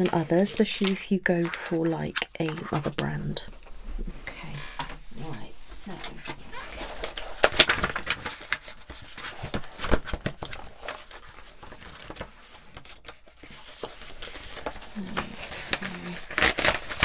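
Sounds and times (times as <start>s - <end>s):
paper and packaging rustling: 0.0s - 17.0s.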